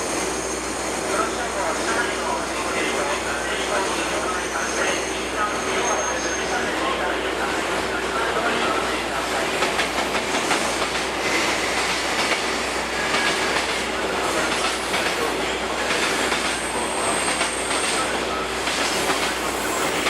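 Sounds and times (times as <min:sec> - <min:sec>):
high wheel squeal: 0:00.0 - 0:01.3, 0:04.2 - 0:06.8
freight train rumbling past: 0:00.0 - 0:20.0.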